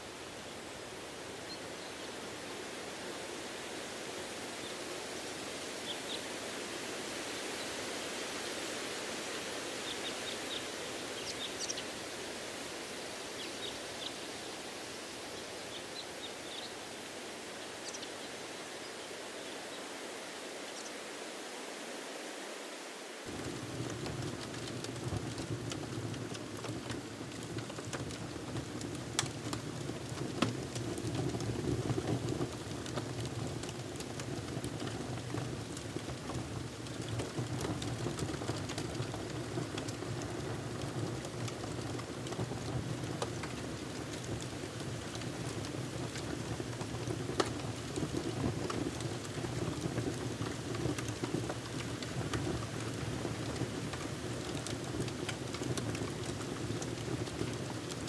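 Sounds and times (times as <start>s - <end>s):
wood fire crackling: 23.3s - 58.0s.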